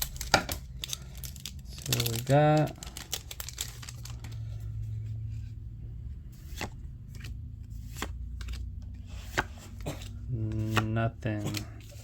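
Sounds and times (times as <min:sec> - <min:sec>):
trading cards flipped by hand: 0:06.4 - 0:12.0.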